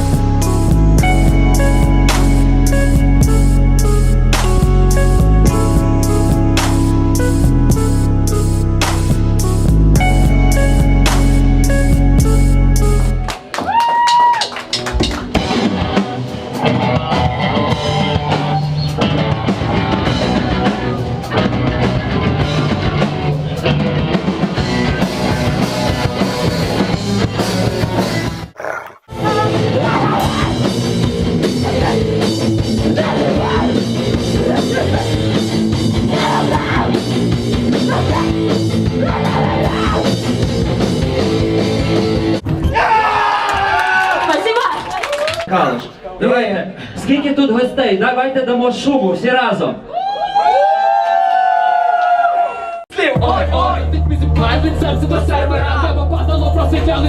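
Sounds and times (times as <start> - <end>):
rock band playing: 0.0 - 13.6, 14.5 - 42.4.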